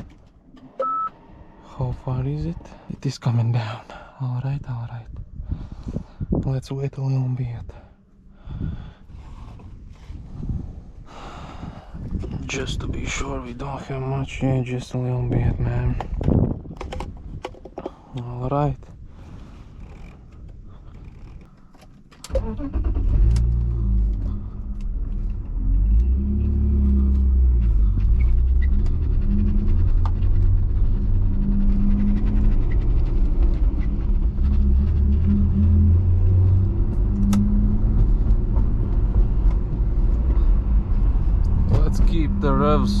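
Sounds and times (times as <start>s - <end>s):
car engine starting and running: 0.0s - 5.3s, 20.3s - 43.0s.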